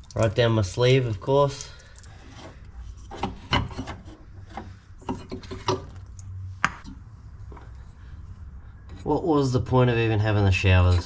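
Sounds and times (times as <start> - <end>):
scraping and rubbing on metal fittings: 1.1 - 6.1.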